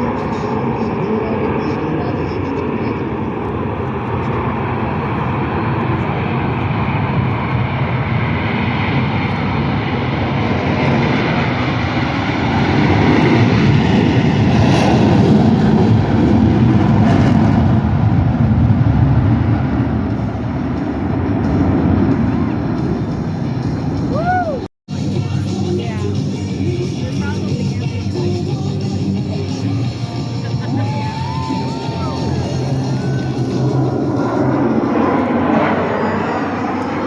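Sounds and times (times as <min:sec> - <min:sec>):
jet roar on afterburner: 0:29.9 - 0:37.0.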